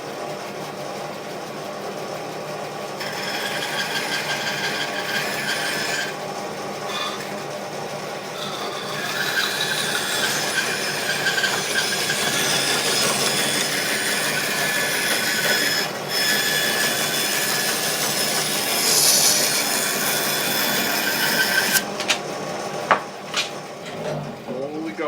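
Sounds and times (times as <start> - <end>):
bandsaw cutting through board: 3.0 - 22.2.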